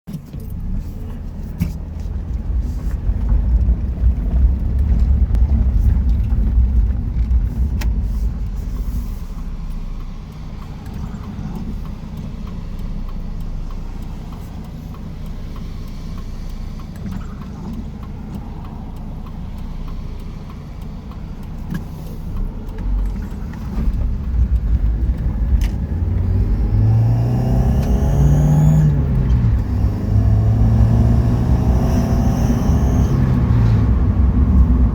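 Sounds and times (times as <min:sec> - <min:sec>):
road rumble: 0:00.0 - 0:34.9
car engine: 0:00.1 - 0:34.9
high whirring whine: 0:24.6 - 0:34.9.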